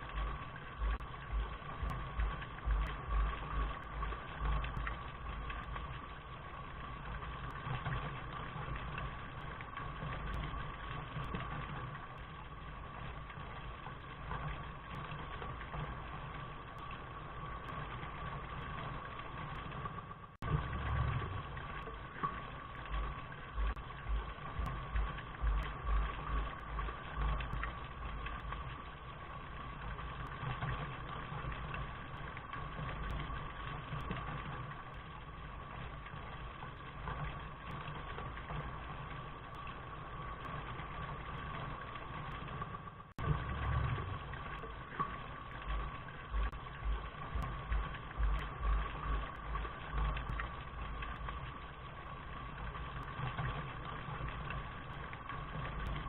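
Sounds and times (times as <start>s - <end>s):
low drips and thuds: 0.0s - 6.2s, 19.5s - 28.9s, 32.4s - 39.7s, 42.3s - 51.7s, 52.7s - 56.0s
rain hiss: 0.0s - 56.0s.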